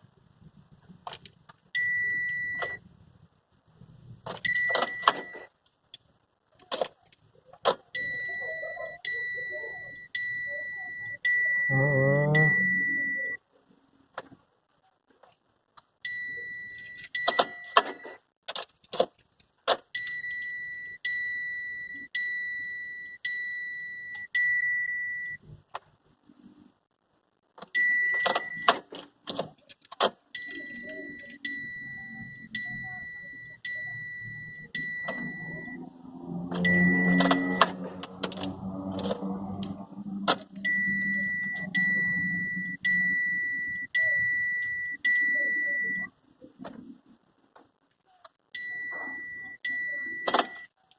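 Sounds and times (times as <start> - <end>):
dashboard warning chime dinging: 1.8 - 2.8, 4.4 - 5.5, 8.0 - 13.4, 16.1 - 18.2, 27.8 - 28.8, 30.4 - 46.1, 48.6 - 50.7.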